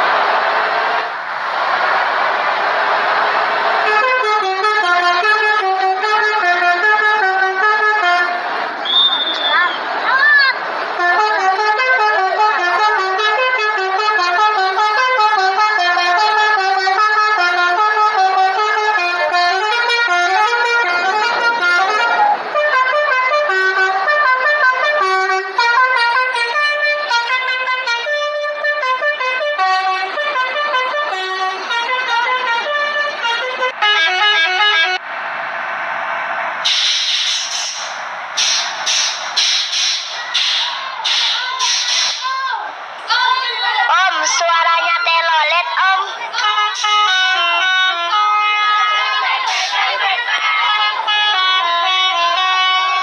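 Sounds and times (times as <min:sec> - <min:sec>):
multi-tone musical bus horn: 0:03.8 - 0:10.3, 0:10.9 - 0:35.0, 0:43.9 - 0:53.0.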